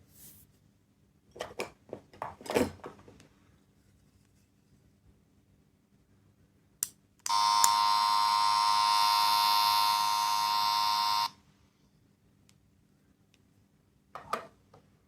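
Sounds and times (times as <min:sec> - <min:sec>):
electronic buzzer tone: 0:07.3 - 0:11.4.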